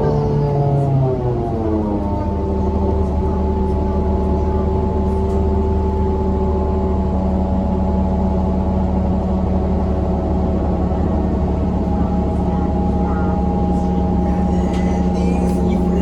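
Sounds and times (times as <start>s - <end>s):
bus whine: 0.0s - 16.0s
low engine drone: 0.0s - 16.0s.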